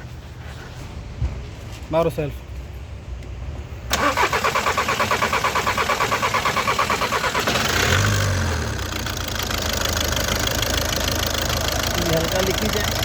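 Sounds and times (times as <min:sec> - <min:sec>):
diesel engine cranking on starter: 0:03.9 - 0:13.0
diesel engine idling: 0:03.9 - 0:13.0.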